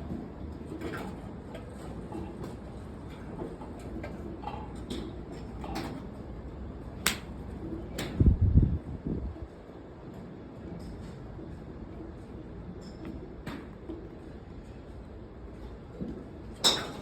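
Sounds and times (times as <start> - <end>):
golf clubs striking balls: 0.8 - 6.1, 6.9 - 8.2, 12.8 - 14.8, 15.6 - 17.0.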